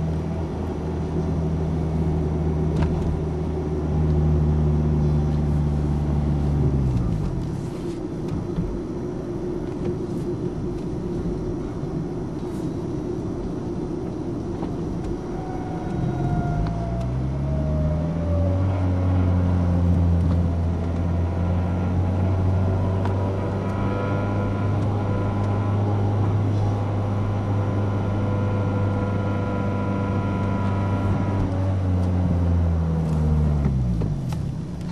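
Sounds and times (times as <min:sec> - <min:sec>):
car droning hum: 0:00.0 - 0:34.9.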